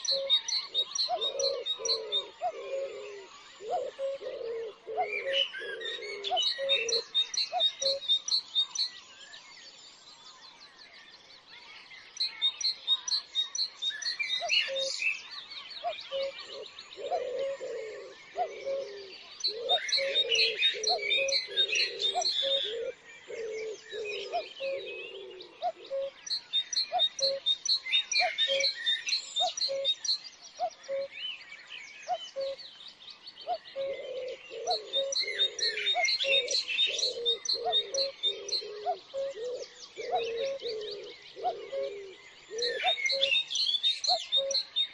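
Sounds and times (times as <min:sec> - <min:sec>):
dove cooing: 0:00.0 - 0:08.0, 0:15.8 - 0:26.2, 0:26.9 - 0:27.5, 0:30.6 - 0:31.1, 0:32.1 - 0:32.6, 0:33.4 - 0:43.4
small songbirds chirping: 0:00.0 - 0:44.9.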